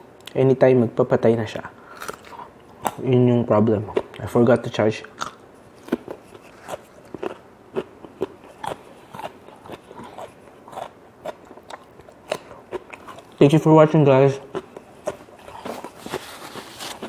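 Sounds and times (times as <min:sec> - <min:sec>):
chewing crunchy food: 0:01.8 - 0:03.1, 0:03.7 - 0:04.4, 0:05.0 - 0:13.7, 0:14.3 - 0:17.0.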